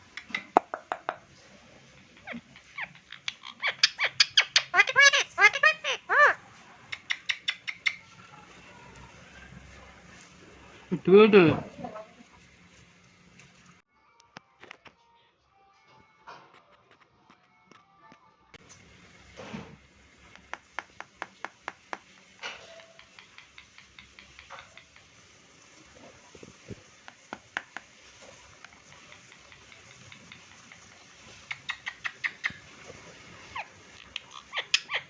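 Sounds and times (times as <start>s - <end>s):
parrot clicking and chirping: 0.0s - 8.2s, 20.3s - 25.4s, 27.0s - 32.8s, 33.4s - 35.0s.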